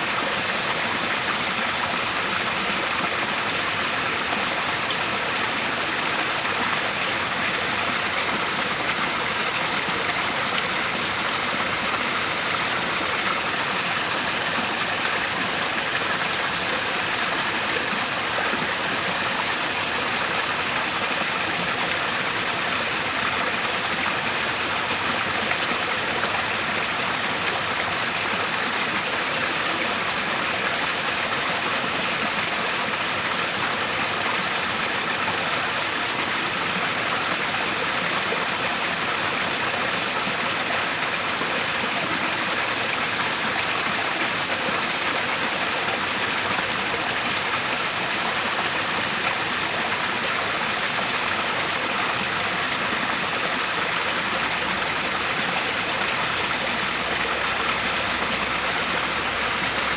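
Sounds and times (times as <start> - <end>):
waterfall rushing: 42.1 - 59.9.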